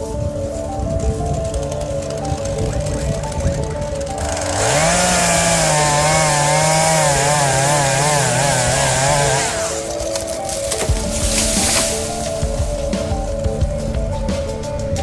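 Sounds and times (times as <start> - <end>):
background music: 0.0 - 15.0
chainsaw revving: 4.0 - 13.2.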